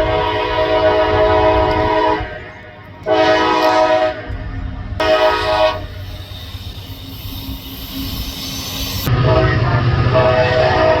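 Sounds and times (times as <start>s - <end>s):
locomotive air horn: 0.0s - 2.4s, 3.0s - 4.3s, 5.0s - 6.5s, 9.0s - 11.0s
train rumble: 0.0s - 11.0s.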